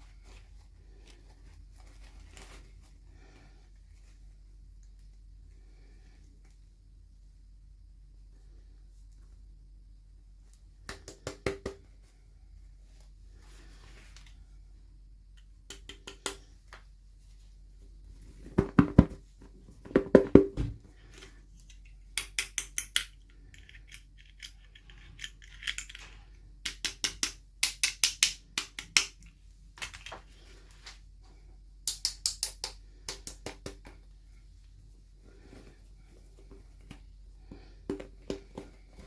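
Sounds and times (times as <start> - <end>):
plastic toy pieces clicking: 21.8 - 29.1.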